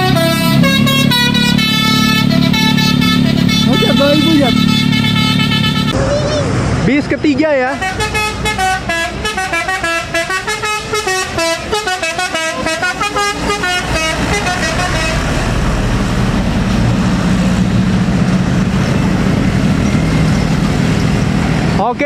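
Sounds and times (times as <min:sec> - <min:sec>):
musical bus horn melody: 0:00.0 - 0:06.0, 0:07.8 - 0:15.6
bus engine running: 0:00.0 - 0:22.0.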